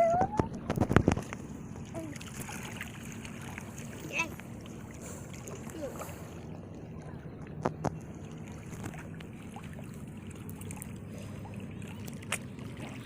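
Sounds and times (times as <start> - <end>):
waves: 0.0 - 13.0
wind: 0.0 - 13.0.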